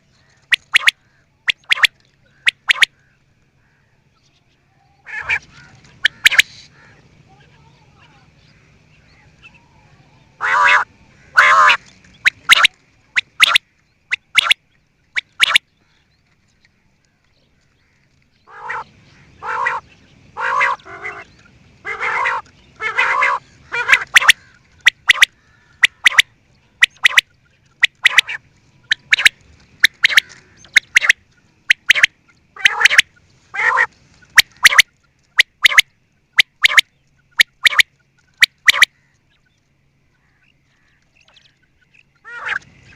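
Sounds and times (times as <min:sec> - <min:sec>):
quail calling: 0:00.0 - 0:16.0, 0:17.8 - 0:42.9
quick sharp bird notes: 0:00.4 - 0:03.0, 0:05.1 - 0:06.8, 0:10.6 - 0:15.7, 0:23.3 - 0:33.2, 0:34.2 - 0:39.0.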